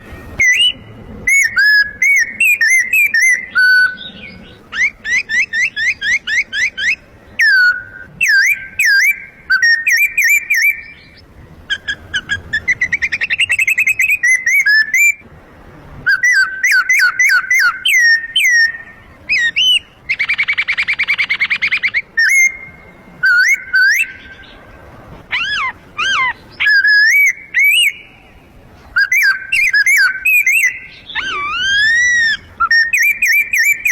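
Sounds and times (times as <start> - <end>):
man whistling birdsong: 0.4 - 4.0, 4.8 - 11.0, 16.1 - 18.8, 29.0 - 33.9.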